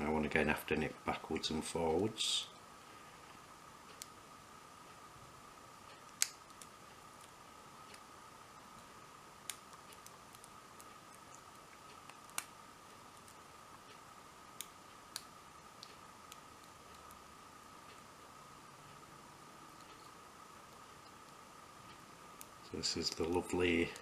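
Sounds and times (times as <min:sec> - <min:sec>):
faint high hum: 0:00.0 - 0:24.0.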